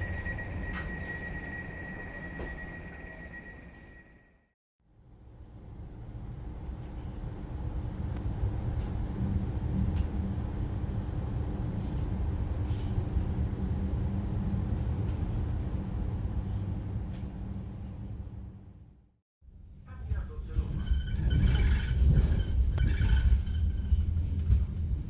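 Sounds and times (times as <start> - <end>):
train low rumble: 0.0 - 25.0.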